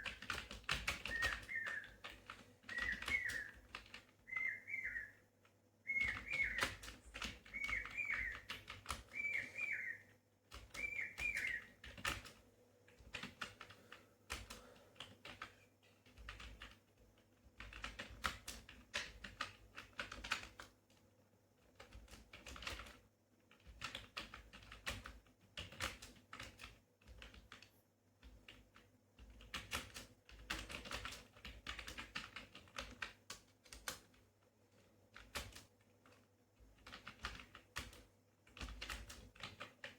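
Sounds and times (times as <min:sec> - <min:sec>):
fast typing on keyboard: 0:00.0 - 0:05.1, 0:05.9 - 0:39.9
high falling whistled call: 0:01.1 - 0:02.0, 0:02.7 - 0:03.6, 0:04.3 - 0:05.2, 0:05.9 - 0:06.8, 0:07.5 - 0:08.5, 0:09.1 - 0:10.1, 0:10.8 - 0:11.7.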